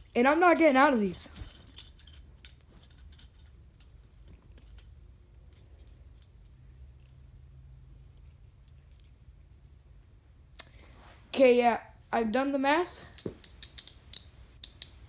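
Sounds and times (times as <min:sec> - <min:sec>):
handcuff chains clinking: 0:00.0 - 0:07.3, 0:07.9 - 0:10.8, 0:13.2 - 0:14.9
low steady hum: 0:00.0 - 0:15.0.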